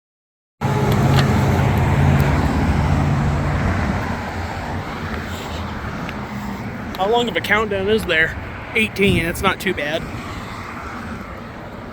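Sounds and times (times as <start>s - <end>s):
tyre and road noise: 0.6s - 11.9s
vehicle engine hum: 0.6s - 11.9s.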